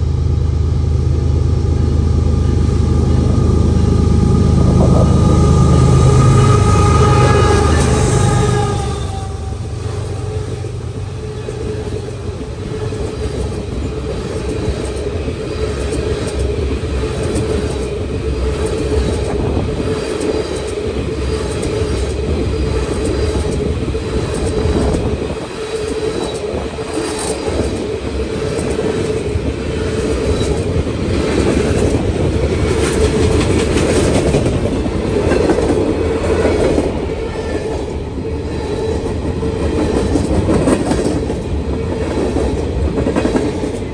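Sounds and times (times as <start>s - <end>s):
train rumble: 0.0s - 43.9s
train wheels clicking over rail joints: 10.1s - 43.9s.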